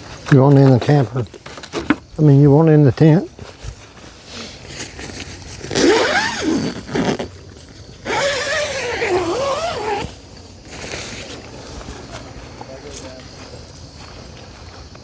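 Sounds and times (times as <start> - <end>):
tent zipper being pulled open: 4.3 - 12.3.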